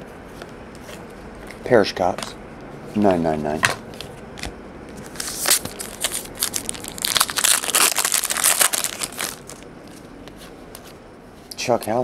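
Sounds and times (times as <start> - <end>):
plastic wrapper crinkling: 5.1 - 9.7.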